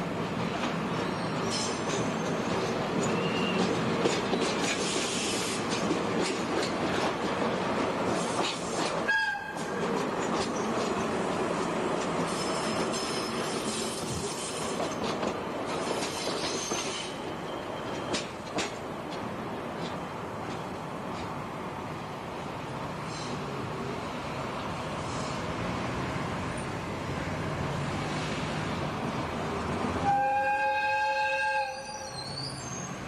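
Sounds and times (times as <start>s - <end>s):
wheels clicking over rail joints: 1.5s - 17.0s, 17.9s - 21.4s
wheel squeal: 31.8s - 33.0s.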